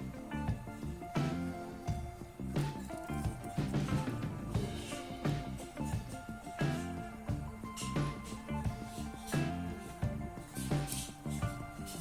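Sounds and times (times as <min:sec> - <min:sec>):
background music with beat: 0:00.0 - 0:12.0.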